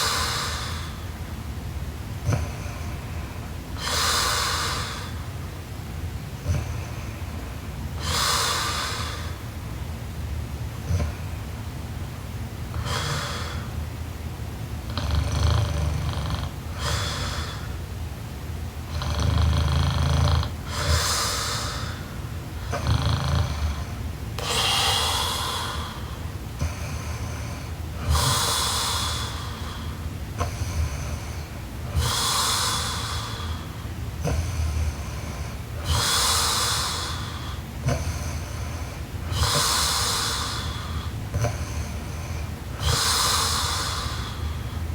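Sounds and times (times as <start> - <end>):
woman snoring: 12.7 - 13.7, 14.9 - 17.8, 18.9 - 42.0, 42.8 - 44.6.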